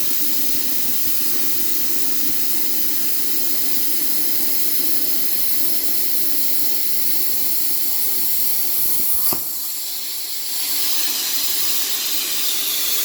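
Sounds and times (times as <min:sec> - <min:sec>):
plasma cutter torch hissing: 0:00.0 - 0:13.0
short click: 0:09.1 - 0:09.7.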